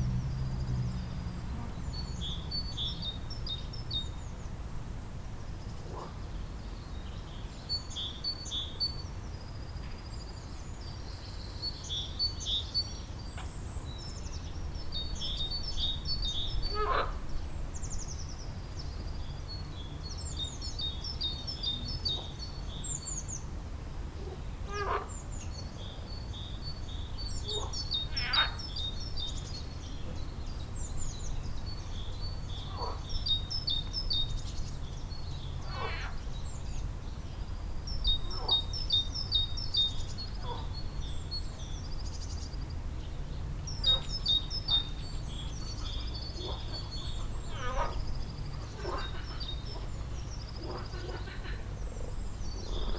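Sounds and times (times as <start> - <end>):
songbirds chirping and singing: 24.8 - 52.9.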